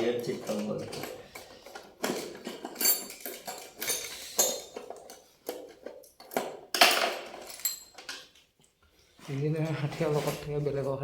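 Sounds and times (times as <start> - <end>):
metal tools clinking and rattling: 0.0 - 8.5.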